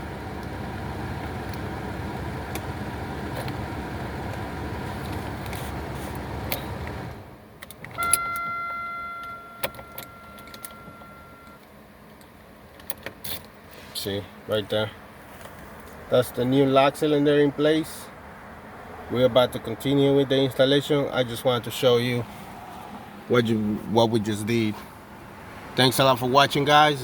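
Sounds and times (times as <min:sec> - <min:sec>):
key clicking in ignition lock: 0:07.6 - 0:11.6
electronic warning chime: 0:08.0 - 0:11.6.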